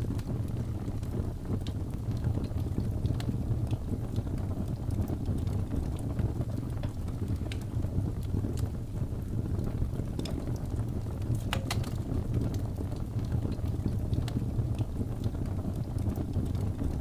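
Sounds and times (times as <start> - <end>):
wood fire crackling: 0.0 - 17.0.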